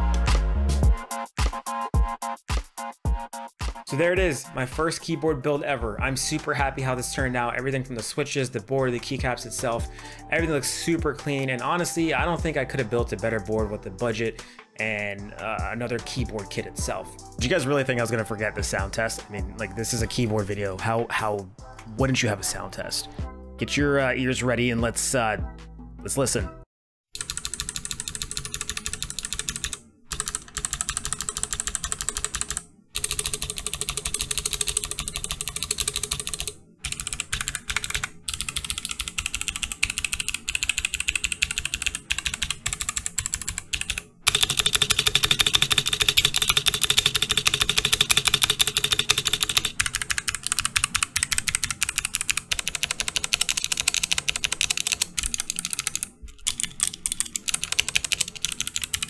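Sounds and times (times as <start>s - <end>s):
mechanical keyboard key clicks: 33.4s - 59.0s.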